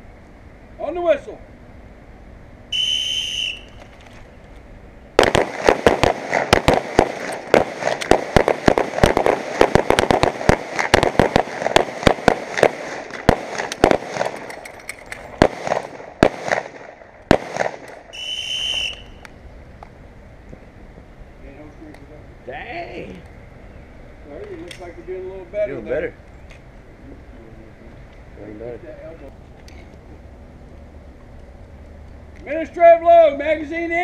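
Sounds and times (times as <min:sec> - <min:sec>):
range whistle blowing: 0:02.7 - 0:03.9, 0:18.1 - 0:19.4.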